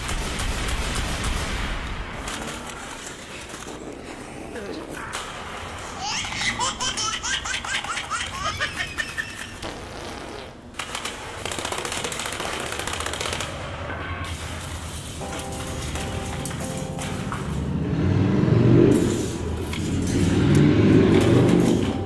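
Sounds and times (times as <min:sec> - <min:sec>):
high-pitched laughter: 0:06.0 - 0:09.8.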